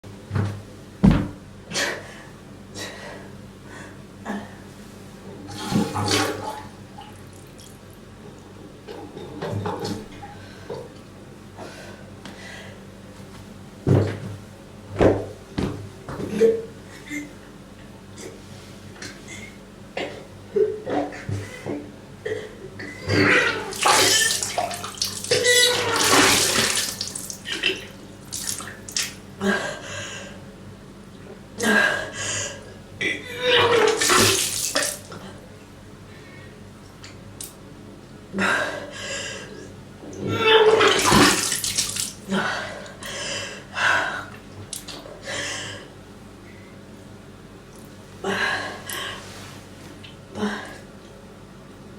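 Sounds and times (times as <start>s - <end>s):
person retching: 23.1s - 29.0s, 33.5s - 35.2s, 40.7s - 42.1s
liquid splashing: 23.5s - 29.2s, 33.7s - 35.2s, 40.8s - 42.2s.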